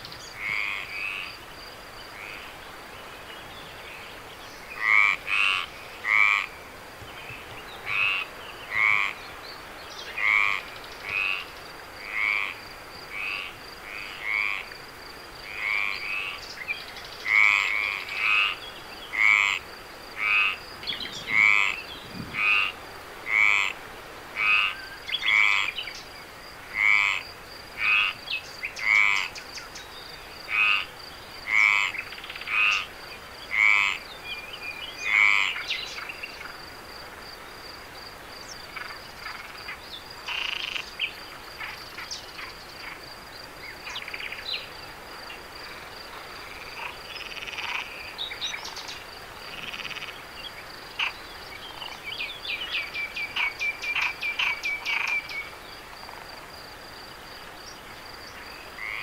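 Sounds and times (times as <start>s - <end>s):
frog rattling call: 17.2s - 19.6s, 20.2s - 23.8s, 24.4s - 25.8s, 26.8s - 29.6s, 31.5s - 32.9s, 33.5s - 34.0s, 38.7s - 41.0s, 46.4s - 50.2s, 51.0s - 51.2s, 52.7s - 55.5s.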